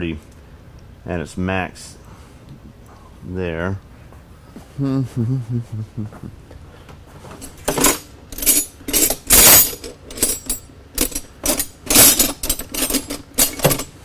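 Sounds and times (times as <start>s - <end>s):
metal tools clanking: 7.4s - 14.0s.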